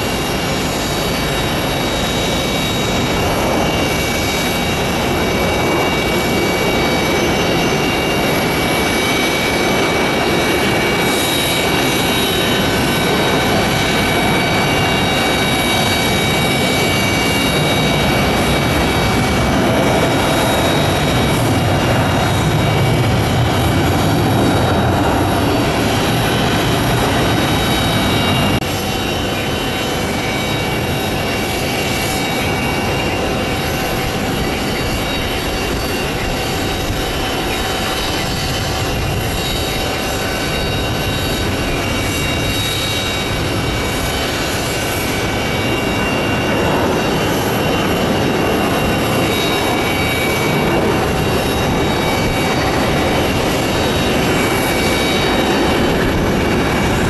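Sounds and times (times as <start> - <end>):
high engine whine: 0.0 - 57.0
jet airliner engines landing: 0.0 - 57.0.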